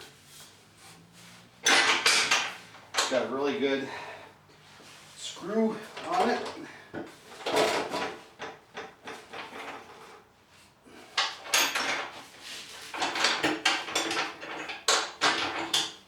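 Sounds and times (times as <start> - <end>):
metal clanks and rattles: 1.6 - 3.3, 5.8 - 10.3, 11.0 - 16.0.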